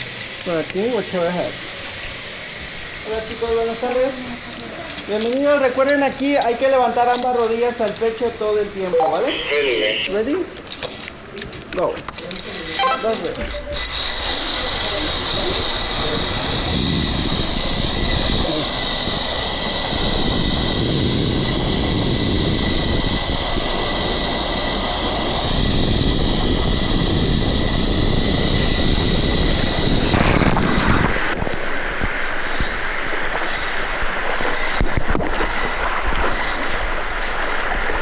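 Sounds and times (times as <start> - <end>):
zipline trolley whirring on cable: 0.0 - 38.0
wind on microphone: 13.4 - 38.0.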